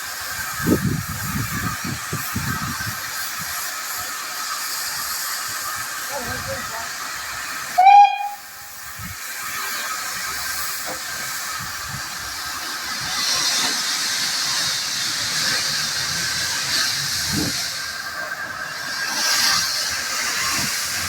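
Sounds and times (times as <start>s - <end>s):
steam locomotive hissing: 0.0s - 21.0s.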